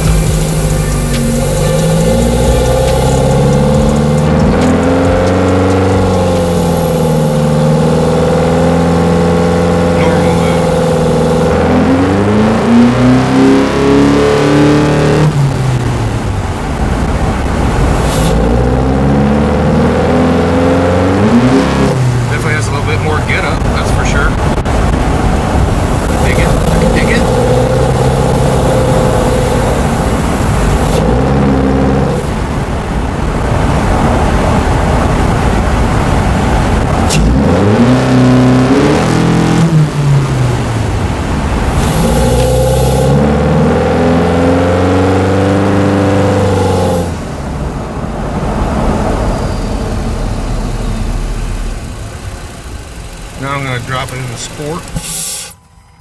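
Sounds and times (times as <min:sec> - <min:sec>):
car engine revving: 0:00.0 - 0:55.7
short hiss: 0:54.9 - 0:55.6.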